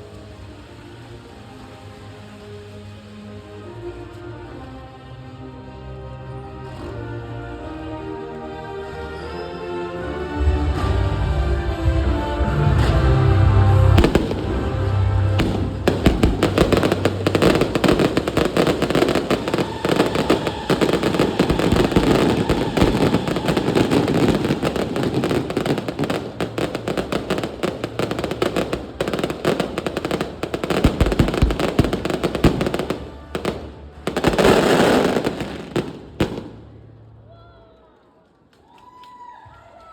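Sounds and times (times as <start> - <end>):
fireworks crackling bangs: 13.9 - 36.8
loud firework burst: 14.0 - 36.8.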